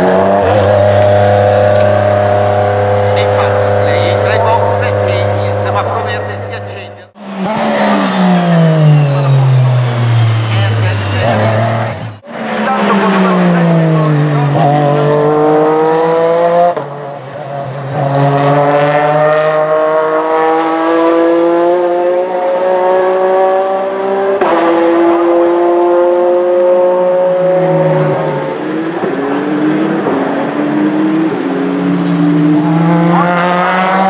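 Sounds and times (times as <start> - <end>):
race car engine revving: 0.0 - 34.0
gear upshifts: 6.5 - 17.5.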